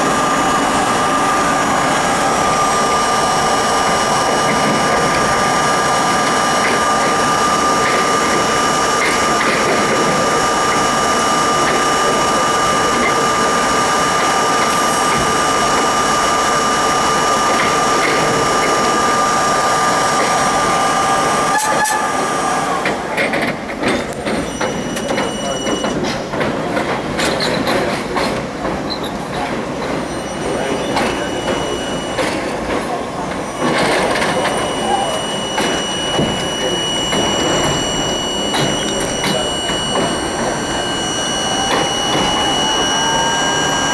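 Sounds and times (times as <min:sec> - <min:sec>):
high even whine: 0:00.0 - 0:22.9, 0:30.1 - 0:43.9
subway train rumbling: 0:00.0 - 0:43.9.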